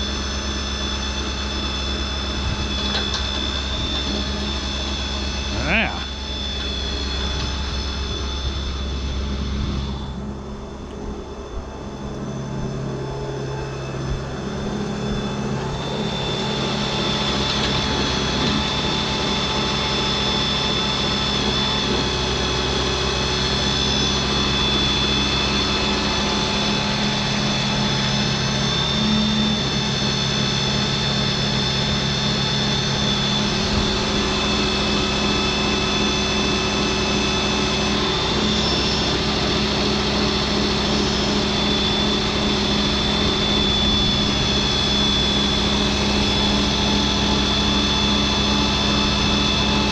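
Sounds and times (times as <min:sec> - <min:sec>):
machinery engine drone with high whine: 0:00.0 - 0:49.9.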